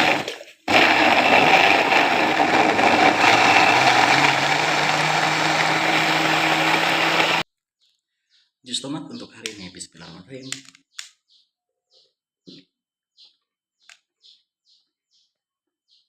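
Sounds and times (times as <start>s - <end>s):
electric blender whirring: 0.0s - 7.4s.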